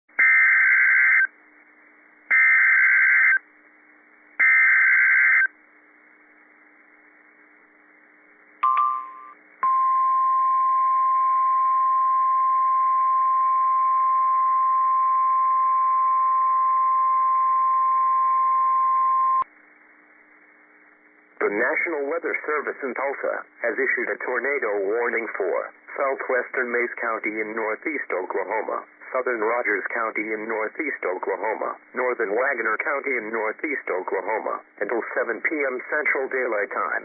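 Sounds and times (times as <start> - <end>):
steady warning alarm tone: 0.2 - 1.3, 2.3 - 3.4, 4.4 - 5.5.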